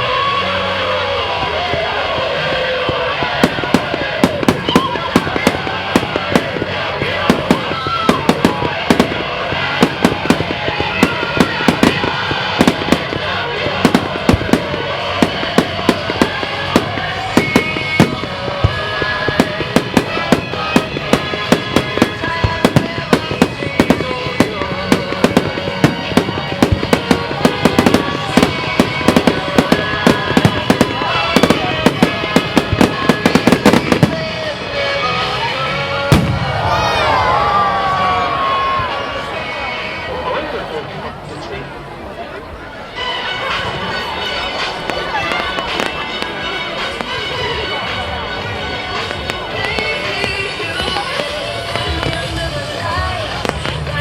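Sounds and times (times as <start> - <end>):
fireworks bangs and crackles: 0.0 - 39.6, 43.4 - 54.0
music with held tones: 42.6 - 54.0.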